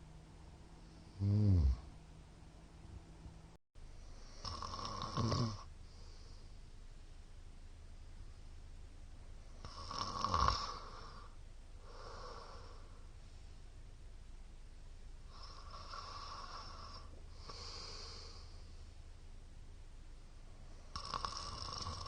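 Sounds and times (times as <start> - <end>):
steady low hum: 0.0 - 22.0
man snoring: 1.1 - 1.9, 4.2 - 5.7, 9.6 - 11.3, 15.3 - 18.4, 20.9 - 22.0.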